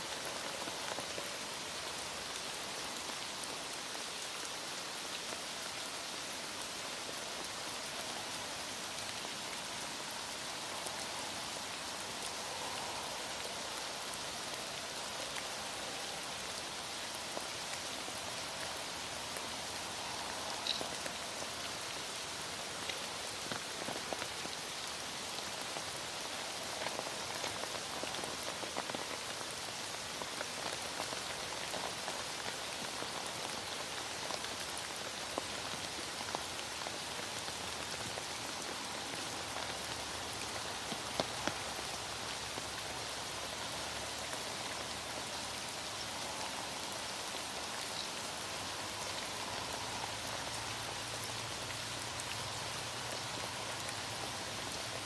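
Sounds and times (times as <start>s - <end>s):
heavy rain falling: 0.0s - 55.0s
raindrops ticking: 18.6s - 25.7s.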